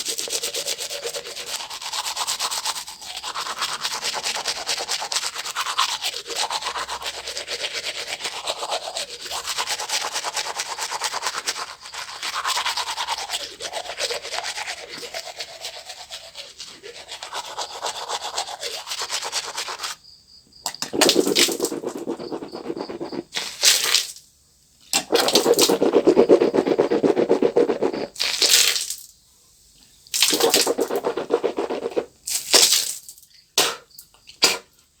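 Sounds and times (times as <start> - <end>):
toothbrush scrubbing teeth: 0.0 - 19.9, 20.9 - 23.5, 25.0 - 28.7, 30.2 - 32.1
water swished in mouth: 20.9 - 23.3, 25.0 - 28.2, 30.2 - 32.1.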